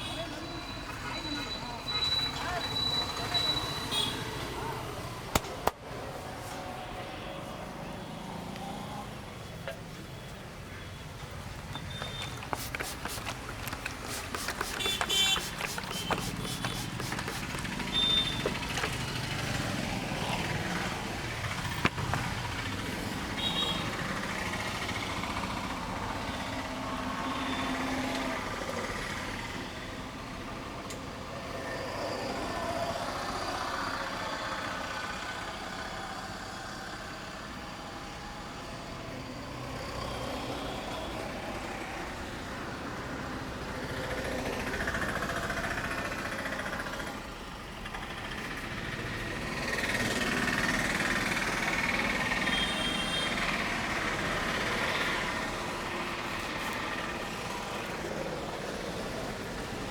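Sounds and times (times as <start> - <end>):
hum of passing vehicles: 0.0 - 59.9.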